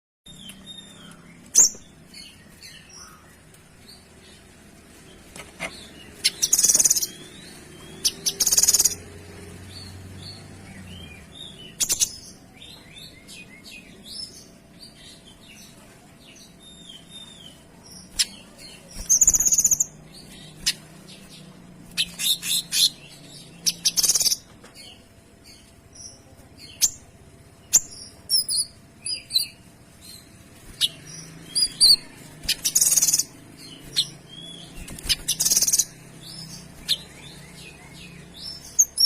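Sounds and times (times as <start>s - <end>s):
songbird singing: 0.3s - 39.0s.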